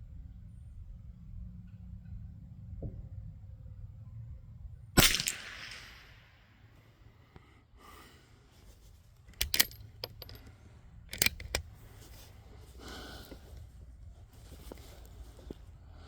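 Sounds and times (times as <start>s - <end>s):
rifle bolt metallic clacks: 9.3s - 11.8s.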